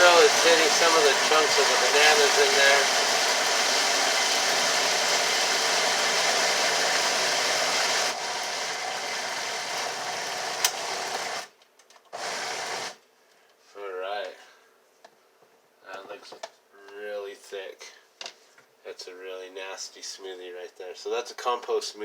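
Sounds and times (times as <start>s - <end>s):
blender motor running: 0.0s - 11.5s, 12.2s - 13.0s.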